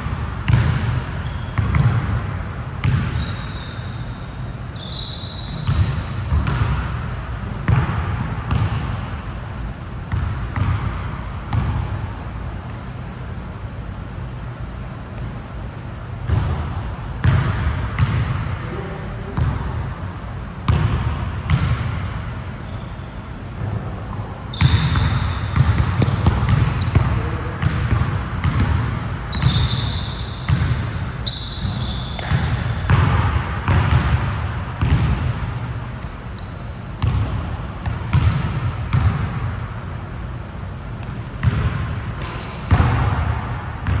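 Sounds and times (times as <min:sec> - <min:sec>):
basketball bouncing on court: 0:00.0 - 0:03.9, 0:04.8 - 0:09.2, 0:10.0 - 0:12.0, 0:16.2 - 0:18.6, 0:19.4 - 0:19.9, 0:20.7 - 0:22.3, 0:23.6 - 0:39.7, 0:40.9 - 0:44.0
sneakers squeaking: 0:00.1 - 0:09.2, 0:10.1 - 0:11.9, 0:22.5 - 0:39.5.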